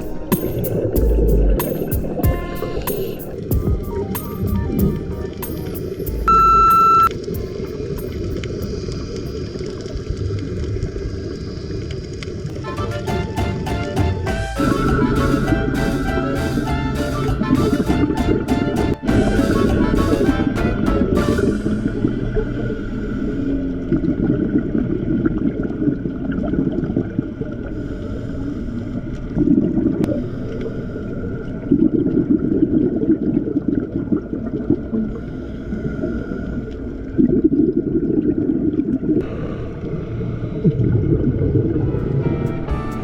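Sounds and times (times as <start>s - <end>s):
underwater low rumble: 0.0s - 12.6s, 19.0s - 43.0s
gurgling exhaled bubbles: 19.0s - 42.7s.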